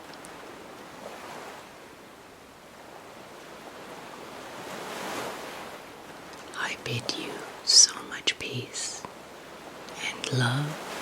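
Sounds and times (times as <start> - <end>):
ocean surf washing in: 2.6 - 11.0.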